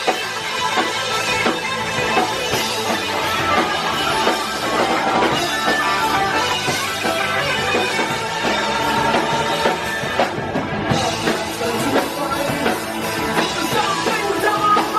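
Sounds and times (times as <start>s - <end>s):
rock band playing: 0.0s - 14.9s.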